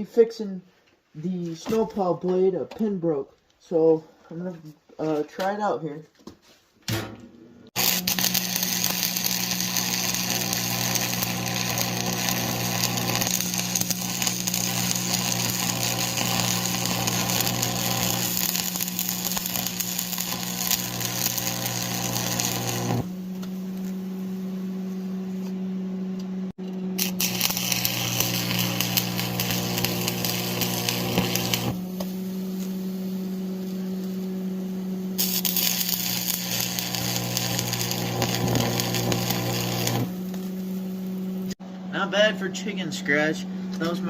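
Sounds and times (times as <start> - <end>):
electrical buzz: 7.6 - 41.6
welding arc crackling and sizzling: 7.7 - 24.4, 27.0 - 41.6.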